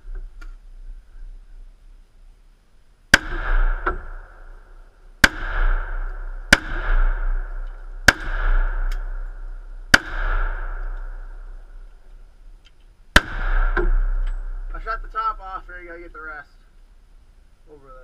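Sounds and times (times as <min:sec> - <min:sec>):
pistol shots: 0:03.1 - 0:04.6, 0:05.2 - 0:11.9, 0:13.2 - 0:14.8
gunshot echo: 0:03.1 - 0:12.1, 0:13.1 - 0:15.4.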